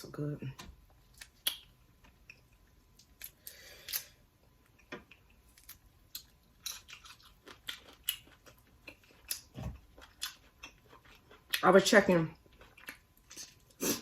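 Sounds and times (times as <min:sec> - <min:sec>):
wet mouth clicks and smacks: 0:01.1 - 0:01.7.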